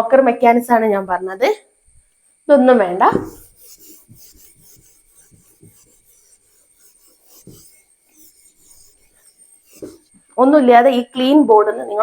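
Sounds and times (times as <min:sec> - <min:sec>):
duster rubbing on board: 0:01.8 - 0:12.0.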